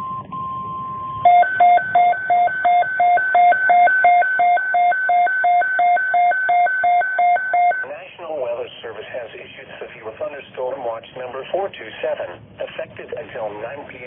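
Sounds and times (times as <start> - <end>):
alternating electronic beeps: 0.0 - 7.9
steady single-pitch tone: 0.0 - 7.9.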